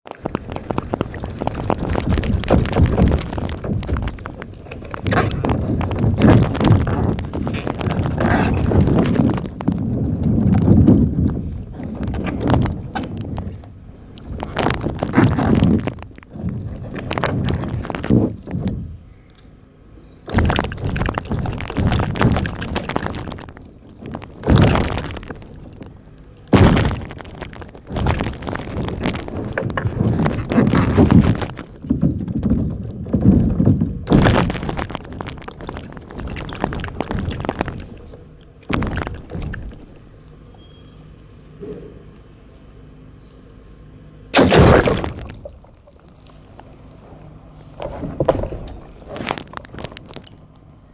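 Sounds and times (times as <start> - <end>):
balloons popping: 44.4 - 47.0.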